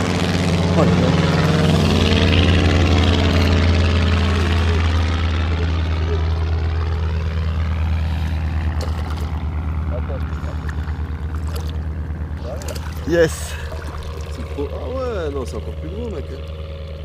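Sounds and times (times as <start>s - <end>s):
low rumble buffeting microphone: 0.0s - 17.0s
wavering hollow sweep: 0.0s - 17.0s.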